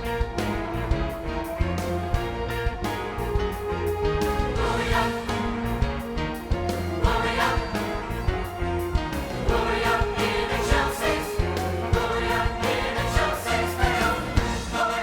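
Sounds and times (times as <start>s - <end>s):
band playing: 0.0s - 15.0s
choir singing: 3.7s - 15.0s
drum beat: 4.5s - 15.0s.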